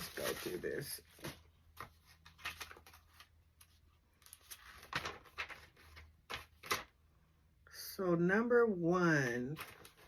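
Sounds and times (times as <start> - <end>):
paper pages rustling: 0.0 - 7.0, 9.6 - 10.0.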